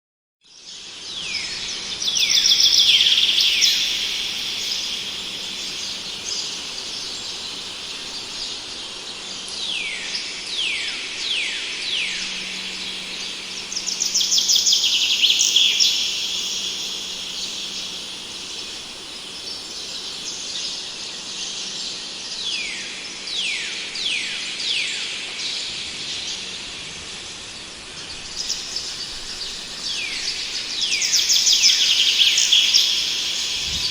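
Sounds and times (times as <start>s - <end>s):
birds twittering fast: 0.5s - 25.0s, 28.1s - 33.9s
steady hiss: 0.7s - 10.5s, 12.3s - 21.9s, 28.3s - 33.9s
birds whistling: 2.0s - 9.0s, 12.4s - 20.8s, 28.4s - 33.9s.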